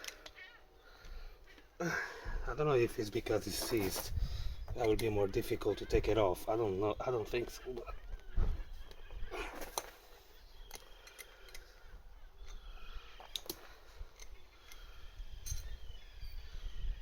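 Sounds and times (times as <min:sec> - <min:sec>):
metallic clicks of hand tools: 0:10.7 - 0:11.7, 0:13.3 - 0:13.6.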